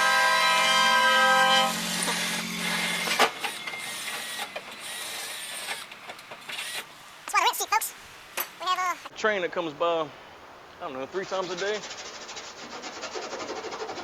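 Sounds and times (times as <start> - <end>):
train horn blast: 0.0 - 3.8.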